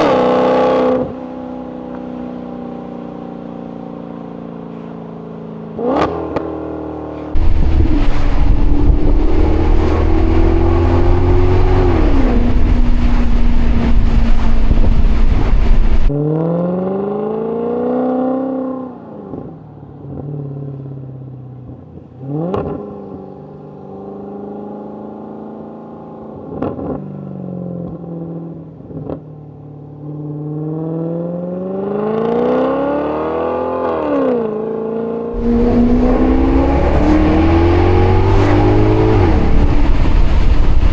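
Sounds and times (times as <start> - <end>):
car engine revving: 7.2 - 18.6, 35.3 - 40.9
exhaust cracks: 7.4 - 16.1, 35.4 - 40.9
loud rushing with deep rumble: 7.4 - 16.1, 35.4 - 40.9.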